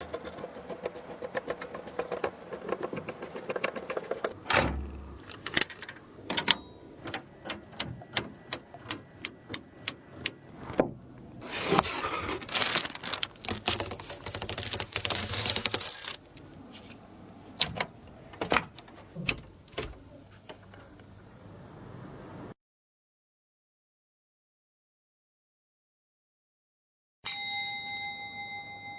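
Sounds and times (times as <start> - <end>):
computer parts clicking and rattling: 0.0 - 9.6, 12.9 - 16.2
rustling: 11.4 - 17.0.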